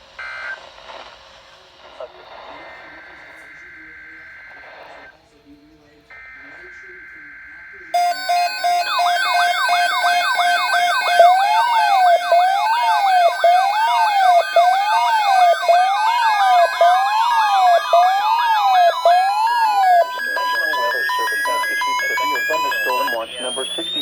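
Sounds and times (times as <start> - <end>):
fast yelping siren: 8.0 - 24.0
pulsing electronic siren tone: 8.0 - 24.0
wailing siren: 8.0 - 24.0.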